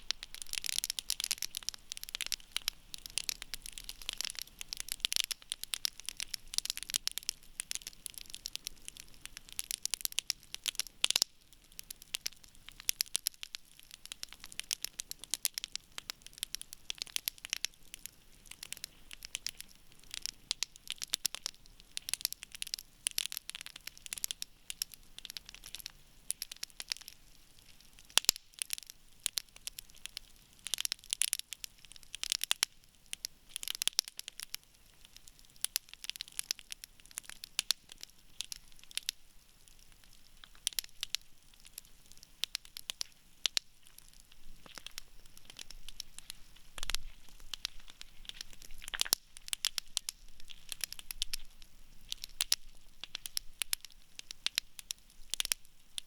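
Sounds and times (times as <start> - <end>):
campfire crackling: 0.0 - 56.0
loud fire pops: 40.0 - 56.0.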